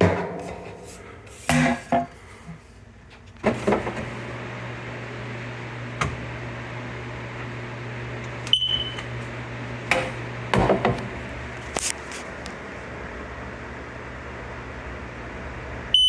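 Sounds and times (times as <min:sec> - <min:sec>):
smoke alarm chirp: 0:08.5 - 0:09.0.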